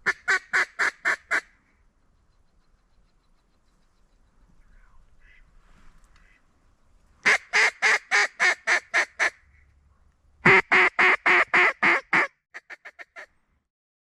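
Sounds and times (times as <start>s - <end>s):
faint distant duck calls: 0.1s - 6.6s
duck call loud quacks: 7.2s - 9.4s, 10.4s - 13.3s.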